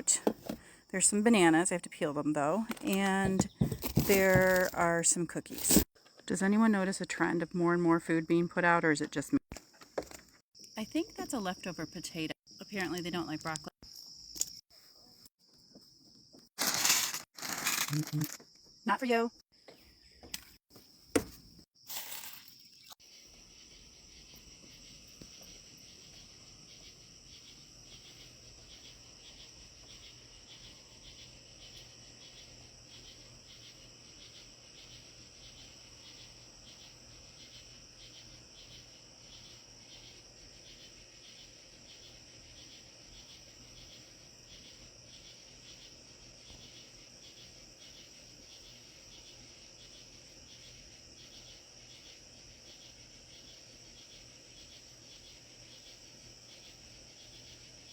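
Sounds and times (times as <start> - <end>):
crickets trilling: 0.0 - 7.4, 9.6 - 57.9
crickets chirping: 9.6 - 57.9.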